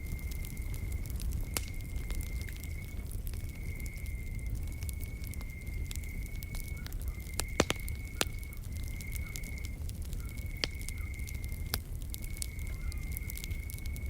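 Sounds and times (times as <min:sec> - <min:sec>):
wood fire crackling and popping: 0:00.0 - 0:14.0
insect trilling: 0:03.6 - 0:11.6.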